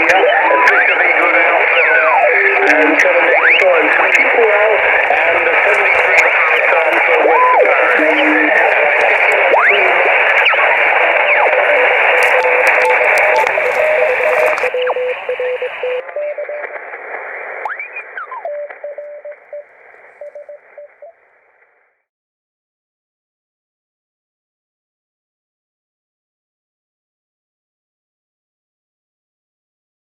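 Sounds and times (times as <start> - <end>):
weak morse code tones: 0.0 - 16.7, 17.7 - 21.1
sliding radio whistles: 0.0 - 16.8
radio receiver hiss: 0.0 - 21.7.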